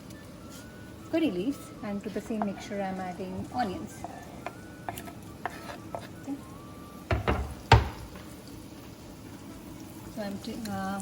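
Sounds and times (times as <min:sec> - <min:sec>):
onions sizzling in hot oil: 0:00.0 - 0:11.0
utensil stirring and scraping pan: 0:01.6 - 0:06.3.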